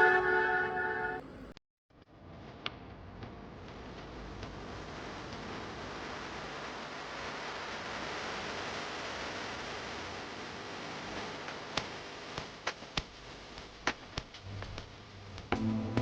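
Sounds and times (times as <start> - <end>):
music: 0.0 - 1.2, 14.5 - 16.0
steady noisy hiss: 2.2 - 16.0.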